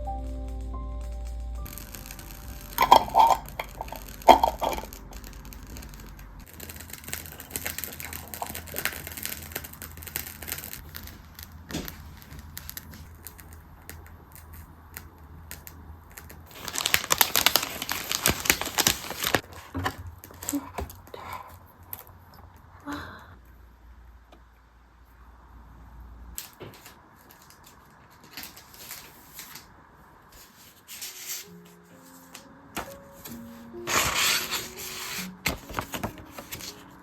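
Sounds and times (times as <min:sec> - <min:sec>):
packaging crinkling and tearing: 0:01.7 - 0:21.0, 0:26.4 - 0:29.7, 0:32.8 - 0:37.0.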